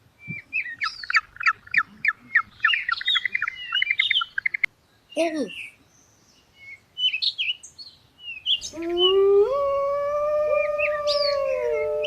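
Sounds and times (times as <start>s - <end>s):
birds chirping: 0.2s - 12.0s
wolf howling: 8.7s - 12.0s.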